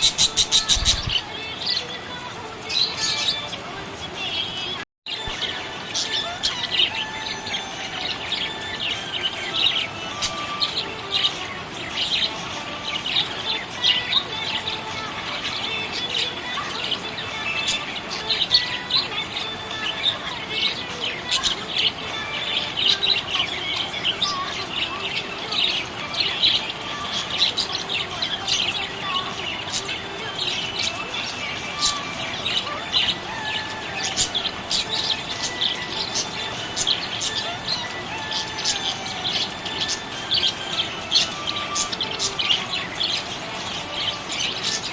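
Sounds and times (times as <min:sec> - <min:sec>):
budgie chirping: 0:00.0 - 0:01.3.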